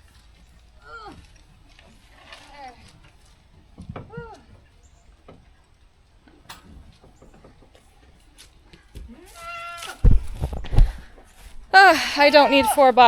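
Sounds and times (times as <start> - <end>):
goat bleating: 9.1 - 10.0
loud dull thump: 10.0 - 11.0.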